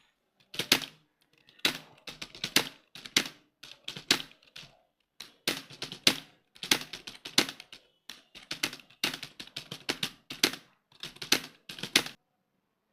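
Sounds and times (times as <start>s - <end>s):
fast keyboard typing: 0.4s - 12.2s.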